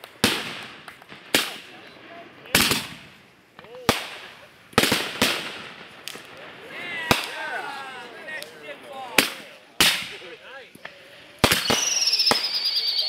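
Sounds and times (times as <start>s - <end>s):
crackling firework pops: 0.0s - 7.4s, 8.3s - 13.0s
firework bangs: 0.0s - 13.0s
falling firework whistle: 11.4s - 13.0s.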